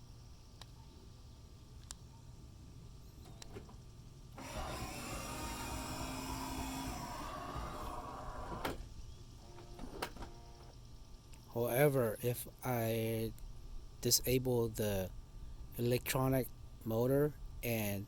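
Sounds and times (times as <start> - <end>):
sliding door motor grinding: 4.4 - 8.8.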